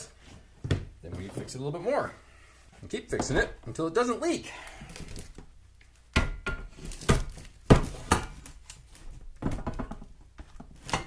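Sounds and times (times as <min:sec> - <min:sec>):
hard objects knocking and clunking: 0:00.6 - 0:01.6, 0:09.1 - 0:11.0.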